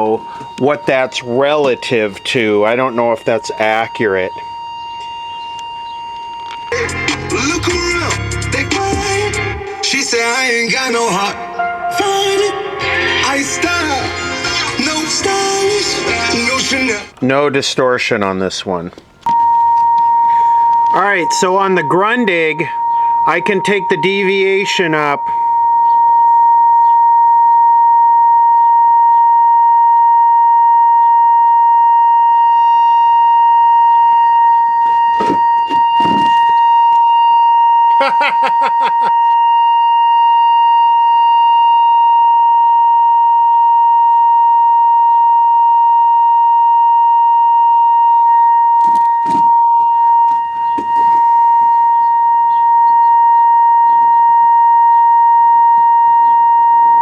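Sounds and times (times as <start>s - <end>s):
steady test tone from loudspeaker: 0.0s - 17.4s, 19.1s - 57.0s
brief crackles and knocks: 35.2s - 36.6s.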